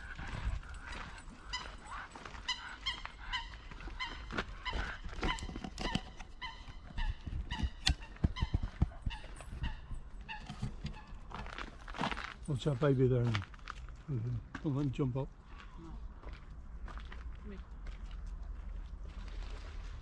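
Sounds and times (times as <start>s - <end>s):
waterbirds honking: 0.0s - 11.3s.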